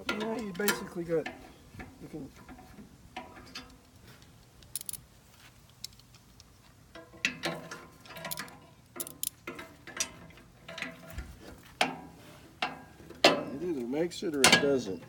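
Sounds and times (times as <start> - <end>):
metal parts and tools clinking: 2.4 - 5.0, 5.7 - 11.2, 14.3 - 15.0.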